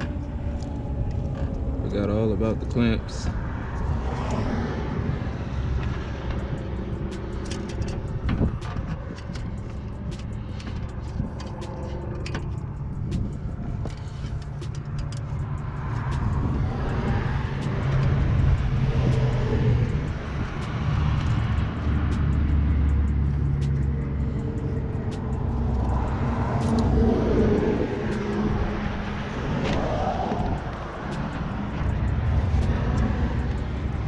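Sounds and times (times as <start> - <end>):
car engine running: 0.0 - 34.0.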